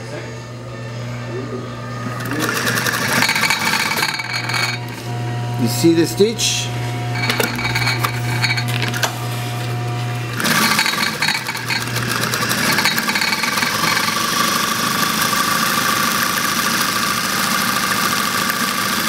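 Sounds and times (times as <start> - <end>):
sewing machine motor humming: 2.1 - 5.1, 7.1 - 19.0
sewing machine stitching: 2.2 - 4.2, 10.3 - 19.0.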